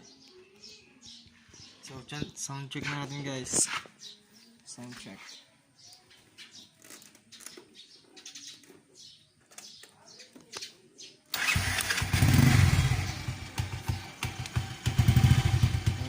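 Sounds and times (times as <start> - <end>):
faint birds chirping: 0.0 - 11.4
motorcycle engine revving: 11.3 - 16.0.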